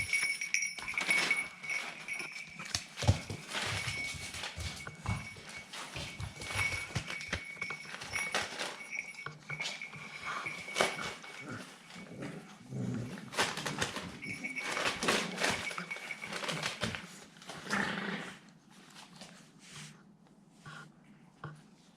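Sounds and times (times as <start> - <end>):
scuffling clicks and knocks: 0.0 - 12.1, 13.2 - 17.6.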